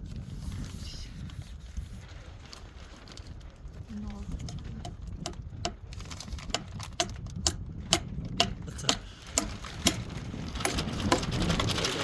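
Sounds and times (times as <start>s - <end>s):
sharp ringing knocks: 6.6s - 10.0s.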